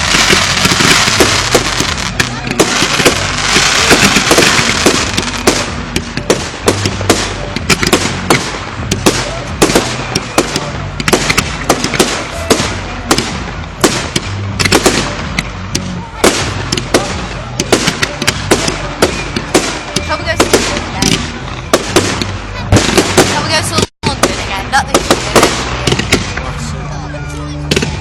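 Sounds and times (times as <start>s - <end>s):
fireworks bangs and crackles: 0.0s - 28.0s.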